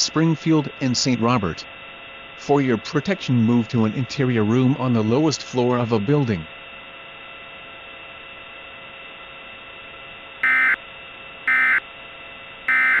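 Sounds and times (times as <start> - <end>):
low hiss with hum tones: 0.0 - 13.0
buzzing data tone bursts: 10.4 - 10.8, 11.4 - 11.8, 12.7 - 13.0.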